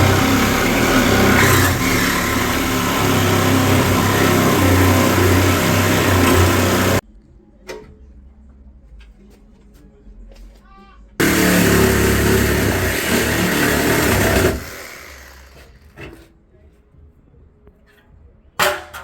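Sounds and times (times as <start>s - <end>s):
power tool cutting steel: 0.0s - 7.0s, 11.2s - 16.1s.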